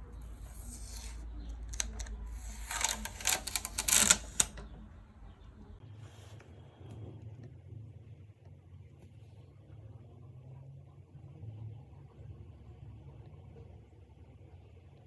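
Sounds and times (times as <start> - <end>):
sharp clicks and rattles: 0.0 - 4.8.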